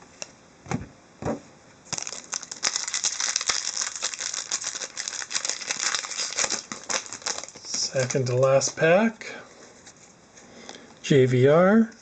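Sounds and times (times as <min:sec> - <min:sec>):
wrapper crinkling and tearing: 0:01.9 - 0:08.9.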